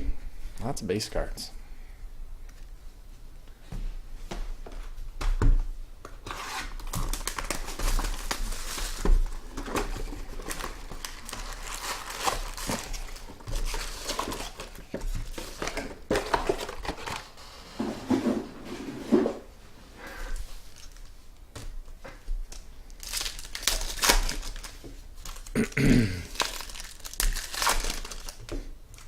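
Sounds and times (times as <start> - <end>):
plastic wrapping crinkling and tearing: 6.2 - 17.4, 20.6 - 21.2, 22.4 - 29.0.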